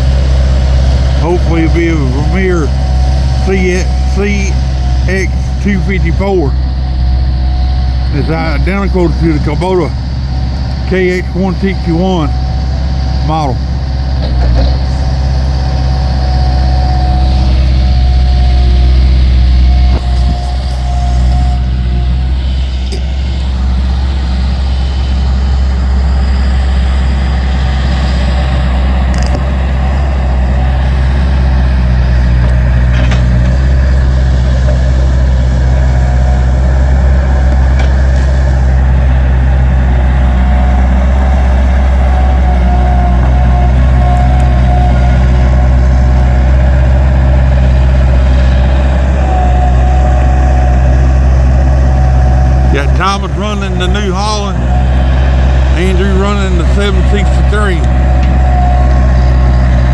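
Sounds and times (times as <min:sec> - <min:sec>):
diesel engines droning: 0:00.0 - 0:59.9
higher engine tone: 0:00.0 - 0:59.9.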